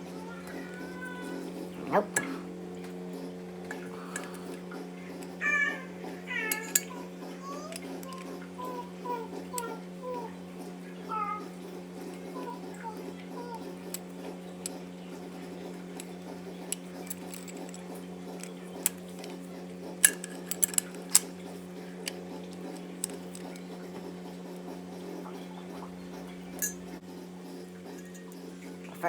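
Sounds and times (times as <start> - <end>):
metal hand tools clinking: 6.3 - 8.3, 16.7 - 19.3, 20.0 - 21.3, 26.6 - 26.8.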